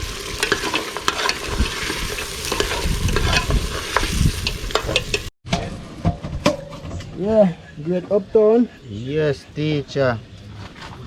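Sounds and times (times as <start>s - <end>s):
meat sizzling in a pot: 0.0s - 5.3s.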